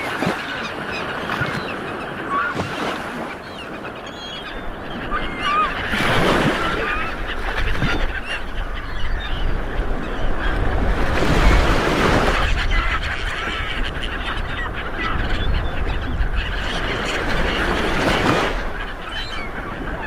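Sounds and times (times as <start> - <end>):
sea waves washing: 0.0 - 3.9
wind: 0.0 - 20.0.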